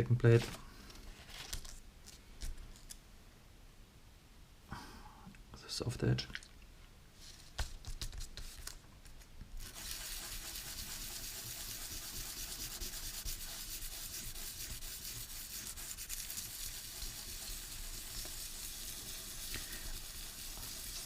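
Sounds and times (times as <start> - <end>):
metal rubbed on sandpaper: 9.6 - 21.0.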